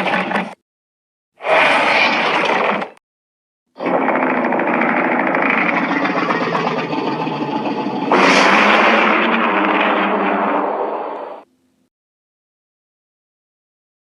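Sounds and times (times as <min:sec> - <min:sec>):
distorted monster sound effect: 0:03.8 - 0:11.5.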